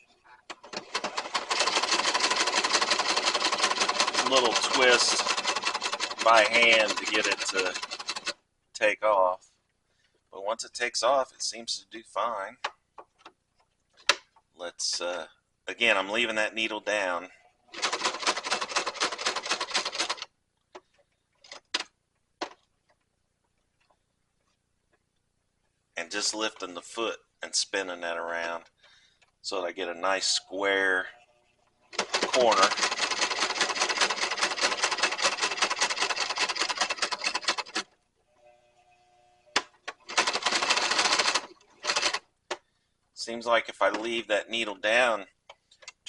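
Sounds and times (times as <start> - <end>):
sewing machine stitching leather: 0.5 - 8.4, 17.7 - 22.6, 31.9 - 42.2
clicks and knocks of handling: 12.6 - 14.5.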